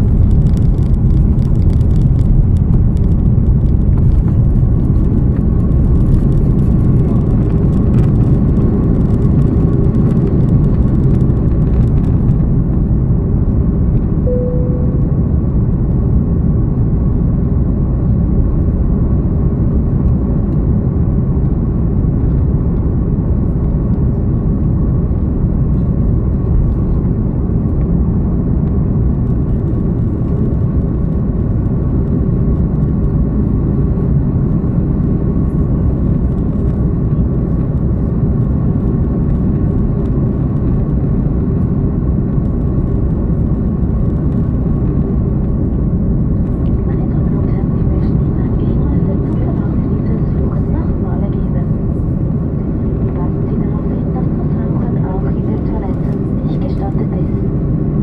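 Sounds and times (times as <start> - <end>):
vehicle rumble in motion: 0.0 - 58.0
brief faint tone: 14.2 - 15.4.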